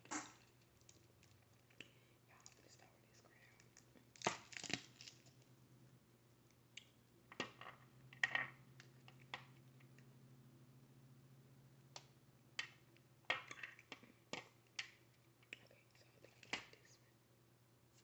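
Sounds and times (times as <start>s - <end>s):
faint hum: 0.0s - 4.2s, 4.9s - 18.0s
crab shell cracking: 3.6s - 5.4s.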